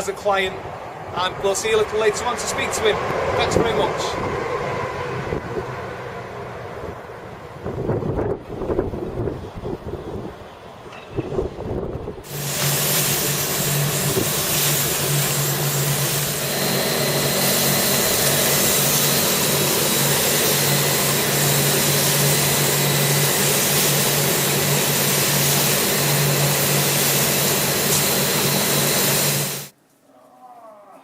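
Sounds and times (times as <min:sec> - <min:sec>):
loud hiss: 0:12.2 - 0:29.7
machine motor humming: 0:12.3 - 0:29.7.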